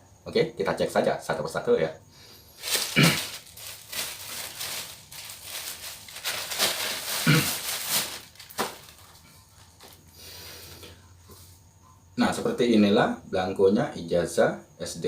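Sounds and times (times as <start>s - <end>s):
paper and plastic packaging rustling: 2.6s - 10.1s.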